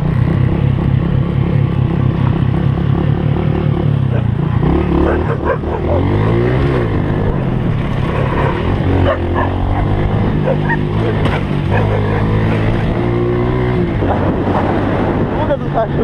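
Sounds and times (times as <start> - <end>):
motorcycle engine running: 0.0 - 16.0
dog barking: 5.0 - 6.3, 9.0 - 11.1, 11.7 - 12.7.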